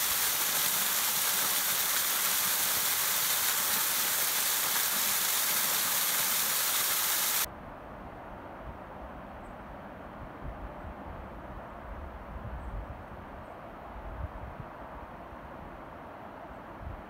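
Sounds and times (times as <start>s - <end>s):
waterfall rushing: 0.0s - 7.5s.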